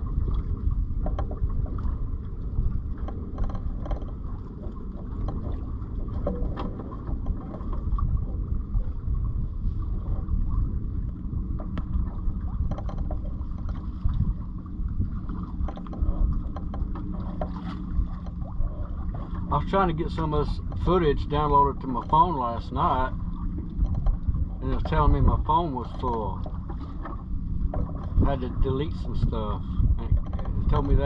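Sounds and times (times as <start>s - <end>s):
wind buffeting microphone: 0.0s - 31.0s
small clicks and knocks: 2.9s - 7.8s, 12.7s - 13.8s, 15.6s - 18.4s, 23.6s - 24.3s, 30.1s - 30.6s.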